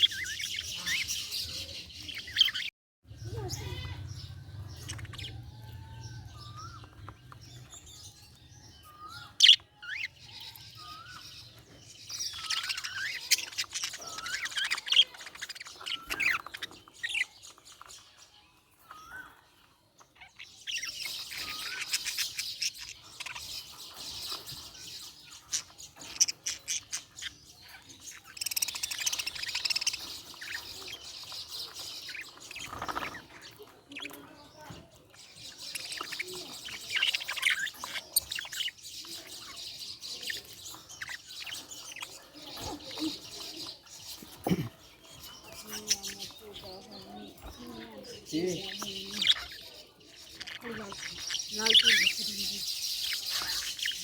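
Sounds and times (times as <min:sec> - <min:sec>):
budgerigars chirping: 0:00.0 - 0:02.7, 0:03.3 - 0:54.0.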